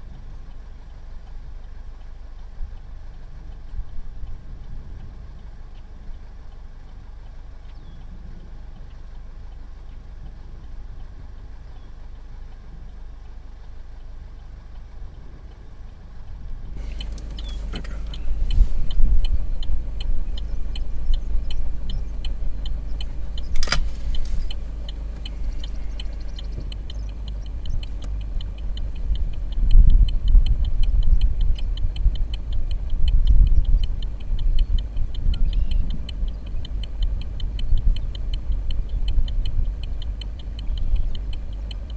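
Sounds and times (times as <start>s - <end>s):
car road rumble: 0.0s - 41.9s
fast regular ticking: 0.0s - 41.9s
sharp click: 16.2s - 41.9s.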